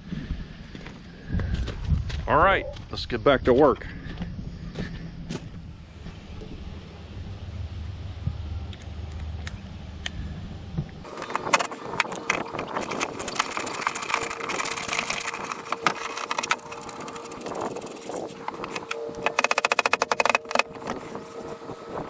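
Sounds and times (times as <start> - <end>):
faint steady hum: 0.0 - 22.0
rapid run of loud clicks: 11.1 - 21.0
clicks and knocks of hardware work: 11.1 - 21.1.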